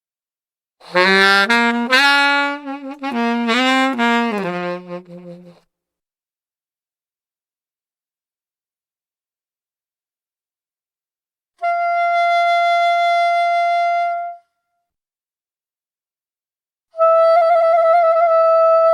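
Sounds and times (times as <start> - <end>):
saxophone long held notes: 0.8 - 5.6.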